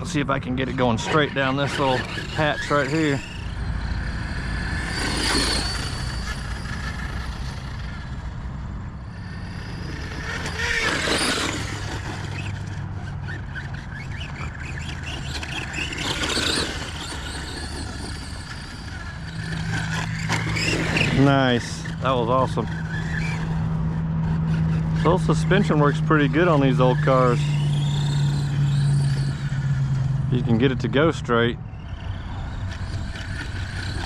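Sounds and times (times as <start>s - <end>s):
electric motor whining: 0.0s - 34.0s
tyres scrabbling on dirt: 10.2s - 28.1s.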